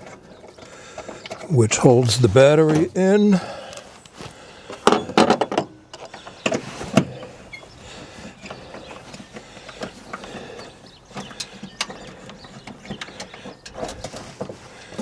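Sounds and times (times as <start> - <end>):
handling noise: 0.0 - 5.6.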